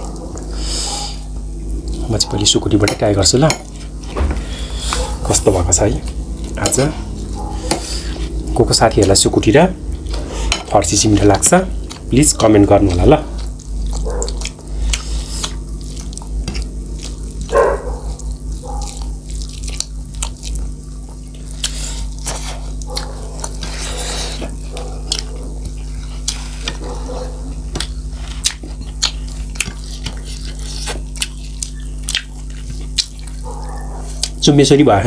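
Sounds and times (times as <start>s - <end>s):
chewing and mouth noises: 0.0s - 34.7s
low hum: 3.6s - 14.9s.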